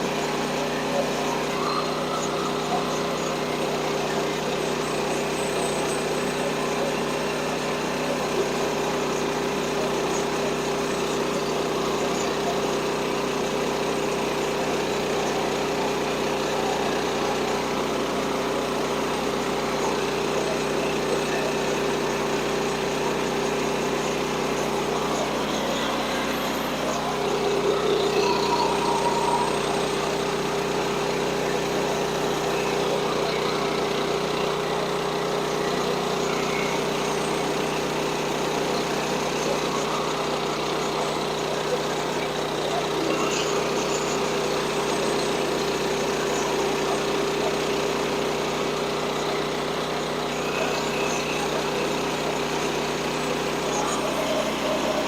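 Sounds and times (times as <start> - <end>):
small gasoline engine running: 0.0 - 55.0.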